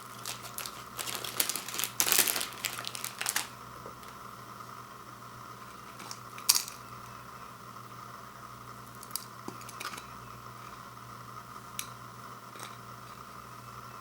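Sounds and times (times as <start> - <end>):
clicks and taps of noodle packet: 0.0 - 4.2
steady electrical hum: 0.0 - 14.0.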